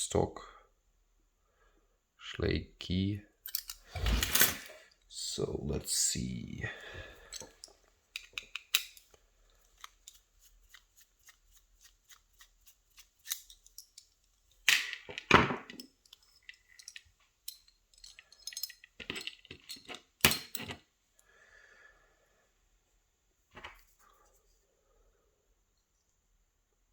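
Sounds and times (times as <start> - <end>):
metal parts clattering: 3.5 - 4.8, 7.2 - 9.0, 14.7 - 20.8.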